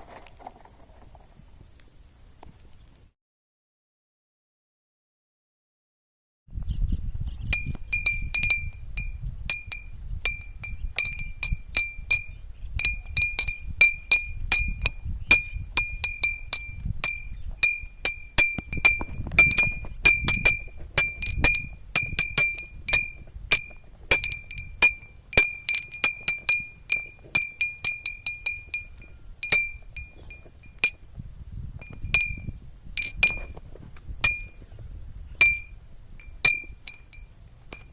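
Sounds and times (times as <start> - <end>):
noisemaker clinking: 7.6 - 31.0, 31.8 - 33.6, 35.4 - 37.9.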